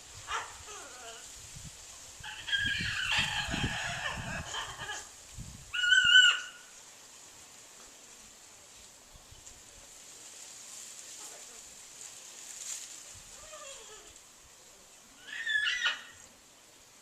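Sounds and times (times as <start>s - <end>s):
bird calling harshly: 5.7s - 6.8s, 15.2s - 16.2s.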